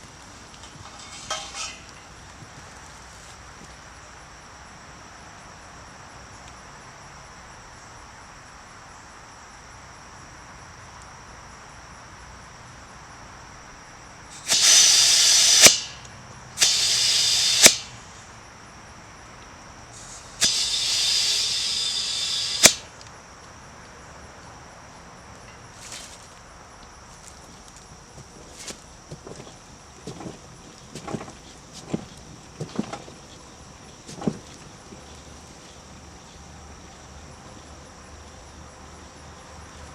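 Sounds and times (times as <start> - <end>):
short bursts of hissing: 14.3 - 18.3, 19.9 - 23.0
sharp click: 14.4 - 18.0, 20.4 - 23.1.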